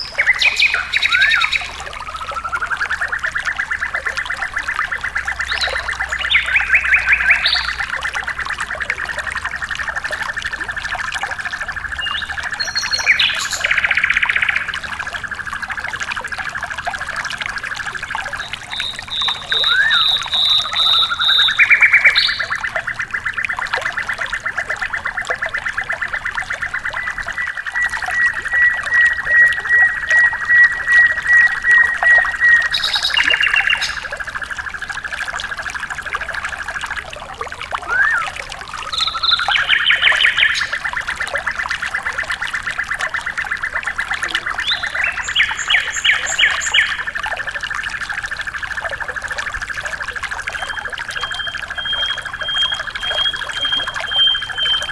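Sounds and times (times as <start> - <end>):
songbird trilling: 0.0 - 4.5, 5.1 - 8.2, 11.9 - 14.9, 17.9 - 23.5, 27.0 - 34.1, 37.8 - 41.0, 44.3 - 47.1, 50.6 - 54.9
trickling water: 0.0 - 54.9.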